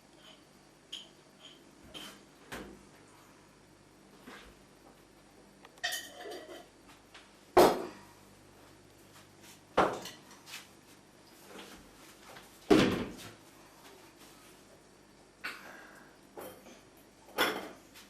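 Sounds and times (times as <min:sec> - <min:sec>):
crockery and spoon clinking: 0:05.8 - 0:06.6.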